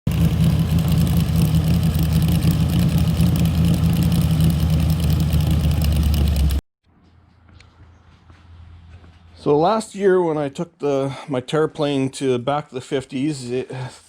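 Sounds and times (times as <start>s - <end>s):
car engine running: 0.1s - 6.6s.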